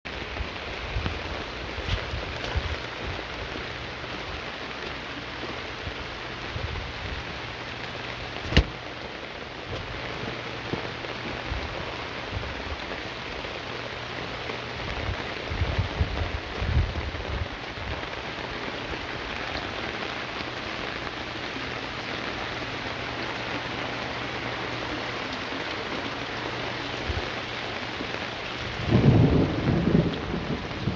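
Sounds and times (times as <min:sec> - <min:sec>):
heavy rain falling: 0:00.1 - 0:30.9
sharp click: 0:08.4 - 0:08.7.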